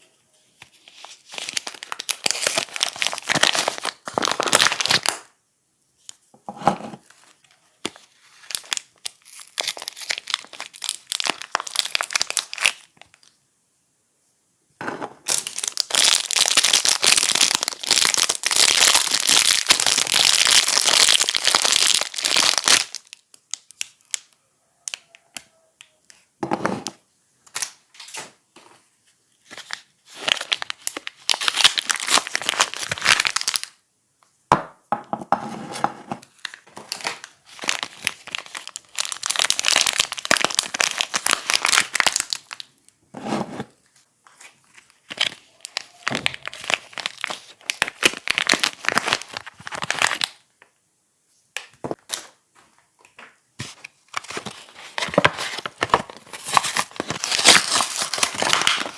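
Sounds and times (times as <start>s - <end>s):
packaging wrappers crinkling and tearing: 0.6s - 5.3s, 7.0s - 13.4s, 15.3s - 25.4s, 29.4s - 33.8s, 36.2s - 42.8s, 44.3s - 50.5s, 53.0s - 58.9s.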